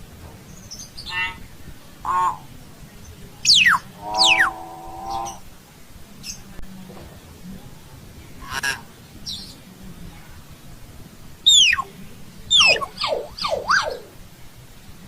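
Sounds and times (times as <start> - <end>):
myna harsh call: 1.0 - 2.5, 3.5 - 5.4, 11.5 - 11.9, 12.5 - 14.2
myna falling whistles: 3.5 - 4.5, 11.5 - 11.9, 12.5 - 14.1.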